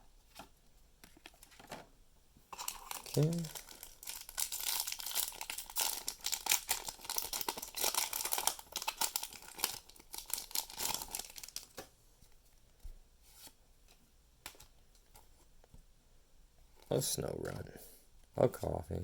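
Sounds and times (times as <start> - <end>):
foil pack tearing and crinkling: 2.6 - 11.8.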